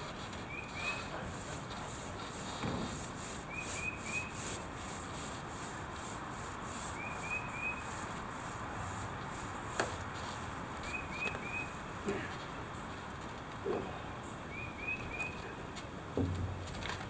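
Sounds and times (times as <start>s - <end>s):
bird chirping: 10.8s - 11.8s, 14.4s - 15.5s.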